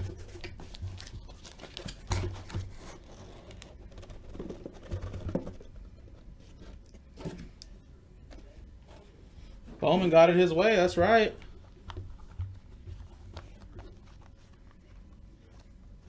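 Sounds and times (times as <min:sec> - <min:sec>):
cardboard scraping and rustling: 0:00.0 - 0:07.6.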